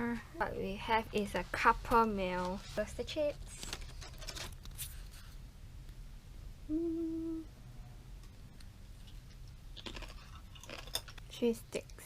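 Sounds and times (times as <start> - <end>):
person humming while eating: 6.6 - 7.6.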